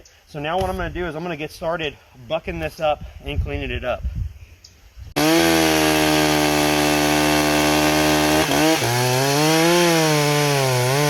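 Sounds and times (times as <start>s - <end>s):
chainsaw cutting log: 5.2s - 11.0s.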